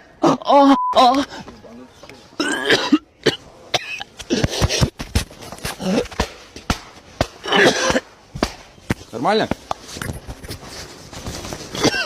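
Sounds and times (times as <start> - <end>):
person coughing: 2.4 - 4.8, 7.4 - 8.1, 11.7 - 12.0.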